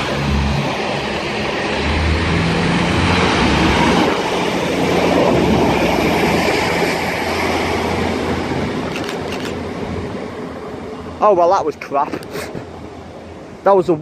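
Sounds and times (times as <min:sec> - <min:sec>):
train engine hum: 0:00.0 - 0:14.0
wheels rumbling on rails: 0:00.0 - 0:14.0.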